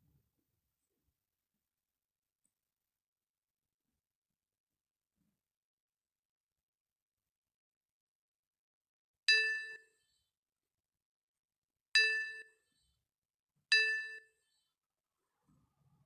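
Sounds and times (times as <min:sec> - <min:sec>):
bright bell dings: 0:09.3 - 0:09.9, 0:12.0 - 0:12.5, 0:13.7 - 0:14.4.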